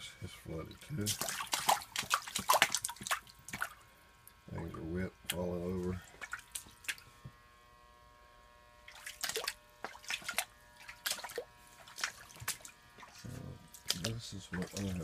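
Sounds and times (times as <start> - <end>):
steady electric hum: 0.0 - 15.0
water splashing and dripping: 0.7 - 4.4, 6.0 - 7.0, 8.9 - 15.0.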